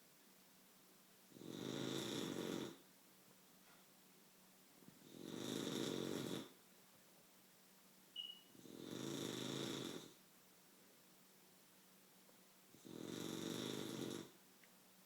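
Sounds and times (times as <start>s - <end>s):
person snoring: 5.1s - 6.6s, 12.8s - 14.3s.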